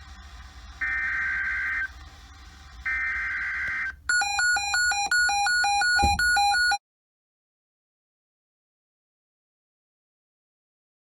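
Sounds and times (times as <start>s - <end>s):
high-low beeping alert tone: 4.1s - 6.8s.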